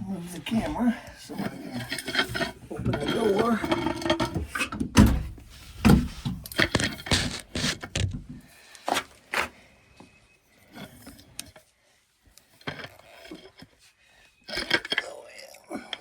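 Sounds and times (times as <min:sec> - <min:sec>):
camera handling clunks and scrapes: 0:05.4 - 0:08.2.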